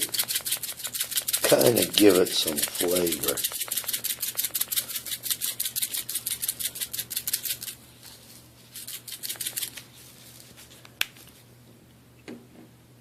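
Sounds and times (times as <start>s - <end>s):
spice shaker rattling: 0.0s - 7.8s, 8.7s - 9.9s.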